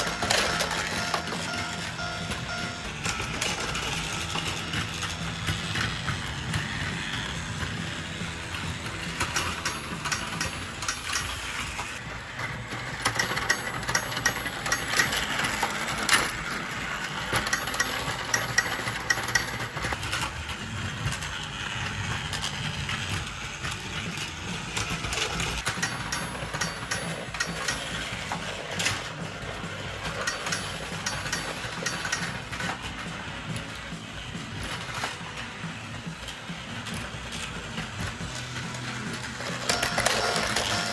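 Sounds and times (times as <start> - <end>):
plastic parts clicking and rattling: 0.0 - 40.9
small toy motor running: 0.0 - 40.9.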